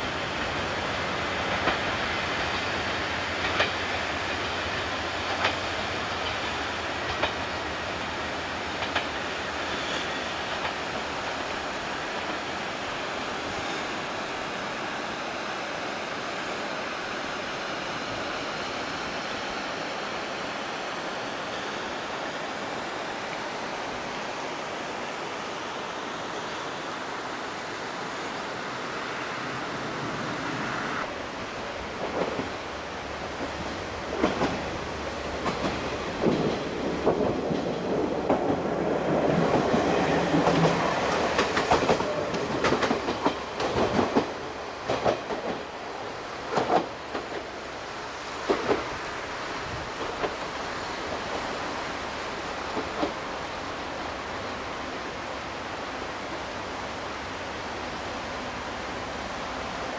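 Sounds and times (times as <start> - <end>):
train wheels clattering over rail joints: 1.3 - 7.7, 8.4 - 12.5, 31.9 - 32.7, 33.3 - 54.6.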